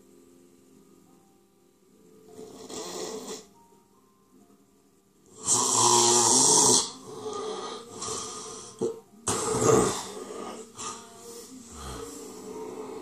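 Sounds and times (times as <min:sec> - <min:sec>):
soft breathing: 0:09.9 - 0:13.0.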